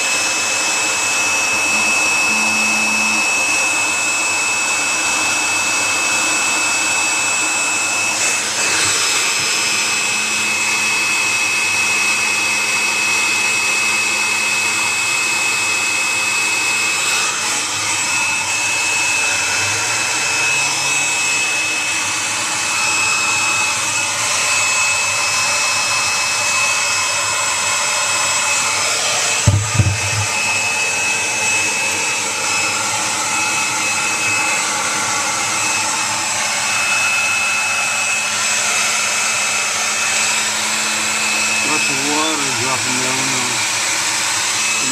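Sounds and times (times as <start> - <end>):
hair dryer blowing air: 0.0 - 44.9
low thump: 29.5 - 30.3.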